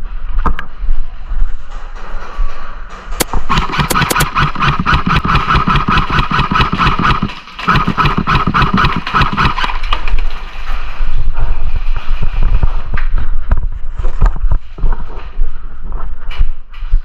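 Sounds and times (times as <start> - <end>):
scattered knocks and clicks: 1.7 - 11.0
airsoft gun firing full auto: 3.2 - 10.0.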